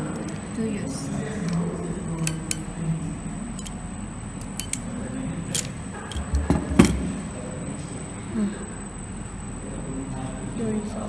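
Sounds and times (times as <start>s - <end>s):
hand tools and cable clicking: 2.2s - 2.7s, 3.6s - 3.8s, 4.4s - 4.9s, 5.5s - 7.2s.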